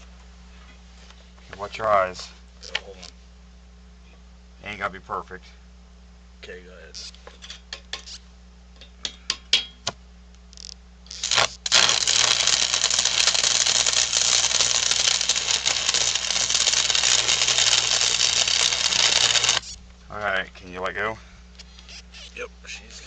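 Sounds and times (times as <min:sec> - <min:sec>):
arc welder crackling: 0:10.3 - 0:19.8.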